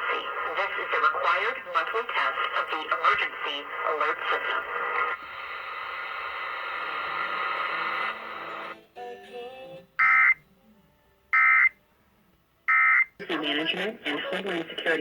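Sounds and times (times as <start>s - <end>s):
muffled radio programme audio: 0.0s - 8.8s, 11.4s - 11.8s, 12.7s - 15.0s.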